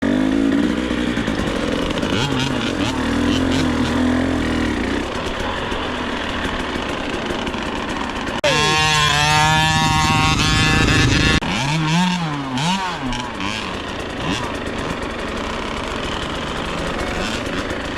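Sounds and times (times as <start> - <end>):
two-stroke dirt bike engine revving: 0.0 - 17.9.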